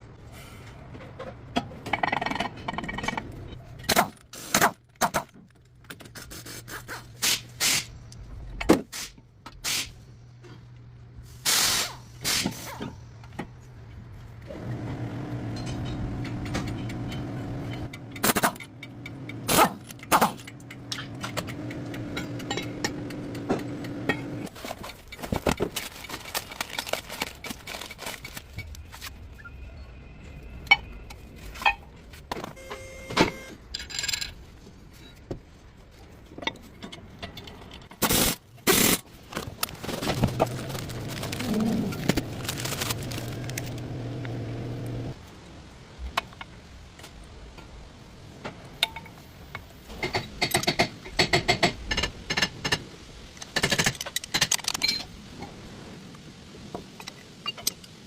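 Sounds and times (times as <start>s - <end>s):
steady mechanical hum: 0.0s - 58.0s.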